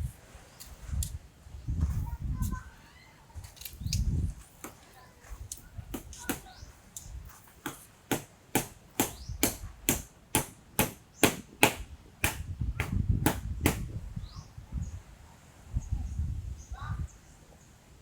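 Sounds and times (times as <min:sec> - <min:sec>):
footsteps walking: 0:03.4 - 0:08.3.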